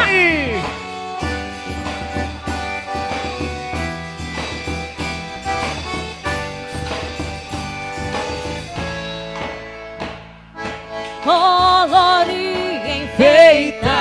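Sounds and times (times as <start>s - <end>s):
steady percussion beat: 0.0s - 11.0s
sustained instrumental chords: 0.0s - 14.0s.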